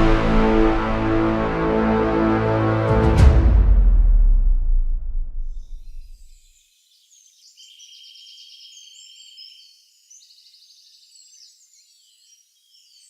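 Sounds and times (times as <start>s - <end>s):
background music: 0.0s - 6.0s
faint birdsong: 5.6s - 13.0s.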